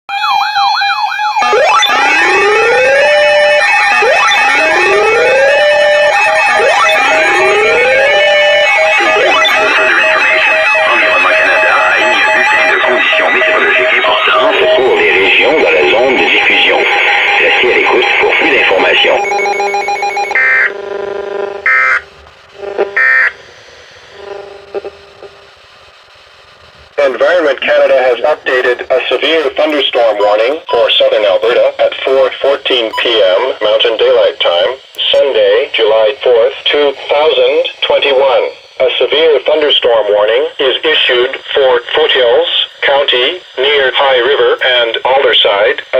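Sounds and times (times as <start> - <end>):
electronic siren alert: 0.1 - 25.5, 30.0 - 41.2.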